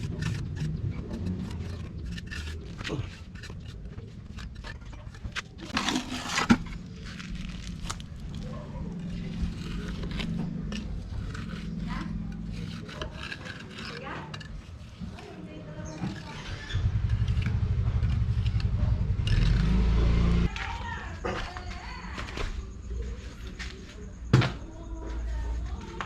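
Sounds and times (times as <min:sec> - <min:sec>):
tools scraping on concrete: 0:00.0 - 0:19.8.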